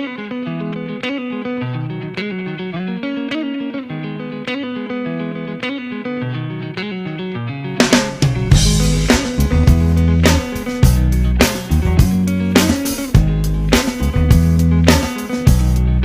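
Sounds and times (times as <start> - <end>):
electric guitar picked notes: 0.0 - 16.0
bass: 7.8 - 16.0.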